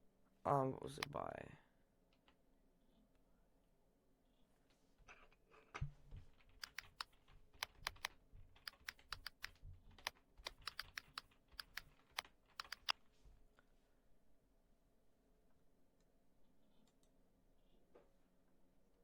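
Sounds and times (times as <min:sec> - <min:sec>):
typing on a keyboard: 0:06.1 - 0:13.0.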